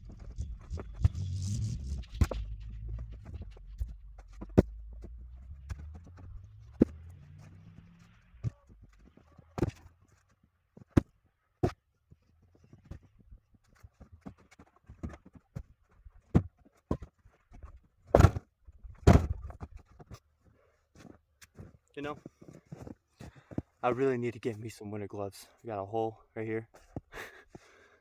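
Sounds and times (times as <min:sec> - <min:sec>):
logs thudding onto woodpile: 0:18.1 - 0:19.7.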